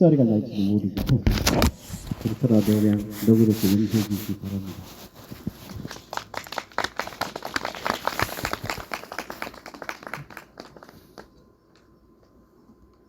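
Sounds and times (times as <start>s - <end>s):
audience applauding: 5.6s - 11.3s.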